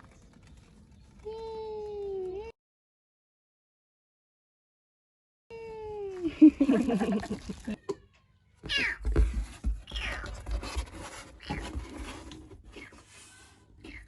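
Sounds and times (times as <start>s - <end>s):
kitten meowing: 9.9s - 10.4s.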